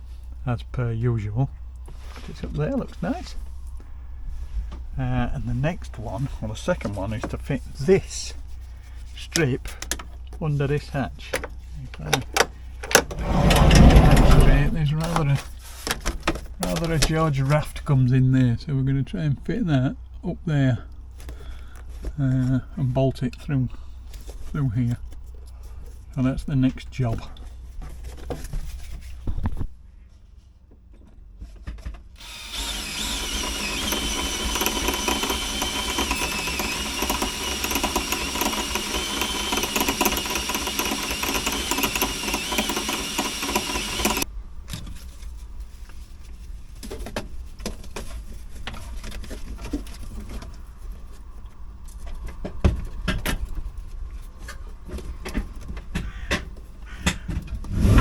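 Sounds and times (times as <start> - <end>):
power drill drilling: 32.2 - 44.2.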